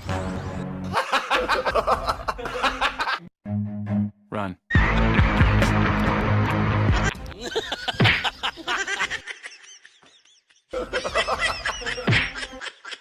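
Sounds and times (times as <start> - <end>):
person giggling: 7.0 - 13.0.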